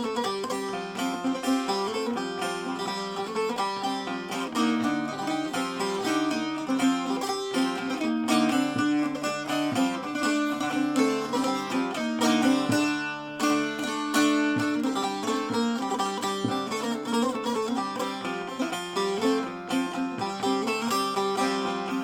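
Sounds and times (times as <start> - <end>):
plucked string instruments melody: 0.0 - 22.0.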